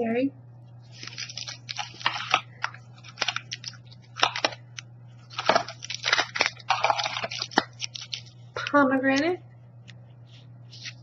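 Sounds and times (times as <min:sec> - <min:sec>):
plastic wrappers crinkling: 0:00.8 - 0:08.8, 0:10.3 - 0:11.0.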